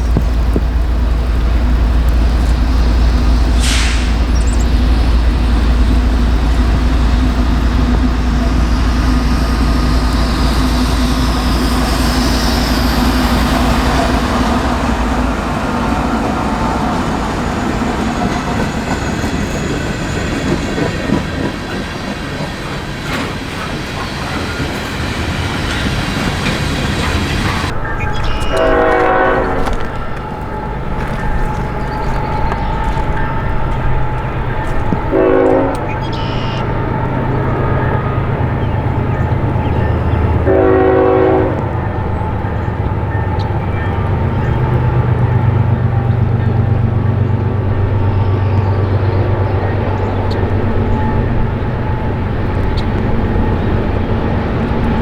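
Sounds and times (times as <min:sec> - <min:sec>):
freight train rumbling: 0:00.0 - 0:55.0
wheels clattering on rail joints: 0:00.0 - 0:55.0
locomotive air horn: 0:01.5 - 0:18.6, 0:26.4 - 0:47.0.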